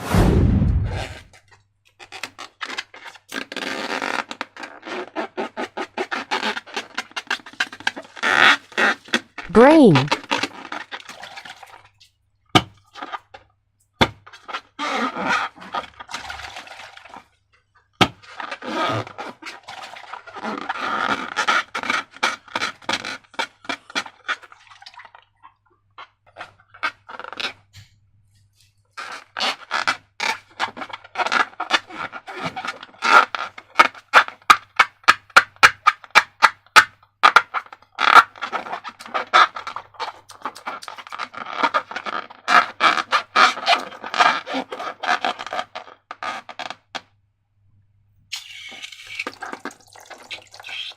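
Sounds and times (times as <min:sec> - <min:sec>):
slime squelching by hand: 0:48.4 - 0:50.9.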